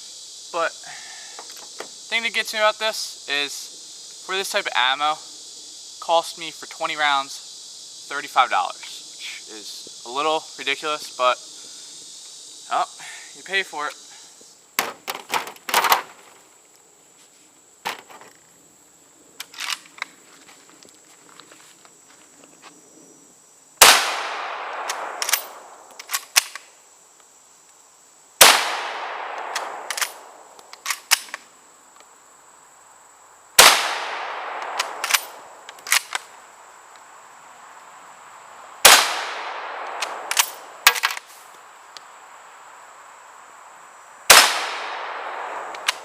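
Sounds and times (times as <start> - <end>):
rifle shots: 23.8 - 26.5, 28.4 - 31.3, 33.6 - 36.2, 38.8 - 41.0, 44.3 - 46.0
rifle bolt clicks: 24.7 - 26.6, 29.3 - 31.4, 34.5 - 36.2, 45.7 - 46.0.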